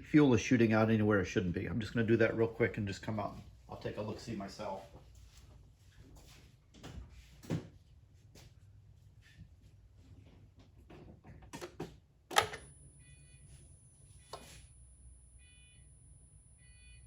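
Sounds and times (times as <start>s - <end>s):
car warning chime: 12.4s - 17.0s.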